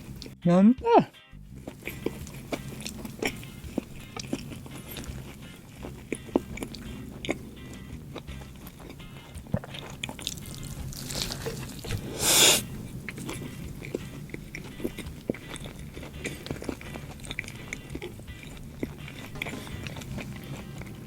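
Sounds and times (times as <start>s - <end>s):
chewing a burger: 0.0s - 0.4s, 1.4s - 21.0s
wet mouth clicks: 1.6s - 20.6s
loud hissing burst: 12.0s - 12.7s.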